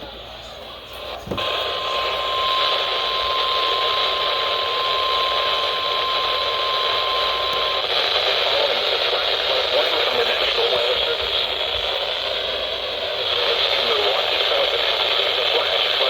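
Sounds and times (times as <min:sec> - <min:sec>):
radio static hiss: 0:00.0 - 0:16.0
high-pitched alarm tone: 0:00.7 - 0:07.9.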